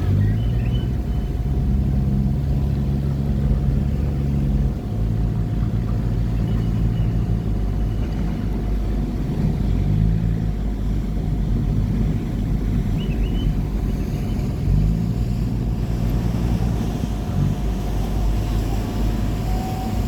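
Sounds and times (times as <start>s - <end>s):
boat engine droning: 0.0s - 20.0s
water and wind rushing: 0.0s - 20.0s
faint steady whine: 10.4s - 20.0s.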